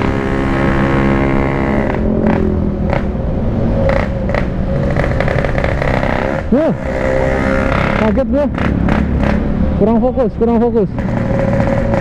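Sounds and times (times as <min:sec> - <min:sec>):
two-stroke motorcycle engine running: 0:03.9 - 0:09.7, 0:10.4 - 0:12.0.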